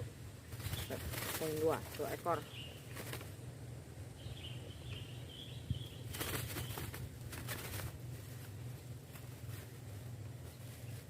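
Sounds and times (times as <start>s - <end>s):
birds flapping wings: 0.5s - 3.4s, 6.0s - 11.0s.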